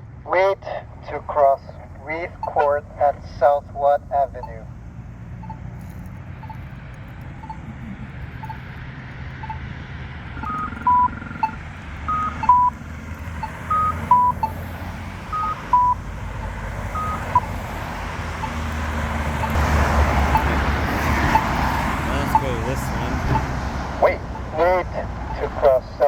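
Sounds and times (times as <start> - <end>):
street traffic: 0.0 - 26.0
two-note pedestrian button beeps: 2.2 - 4.7, 5.4 - 6.8, 7.4 - 8.8, 9.4 - 9.6, 10.3 - 12.8, 13.4 - 14.6, 15.3 - 17.6, 22.1 - 26.0.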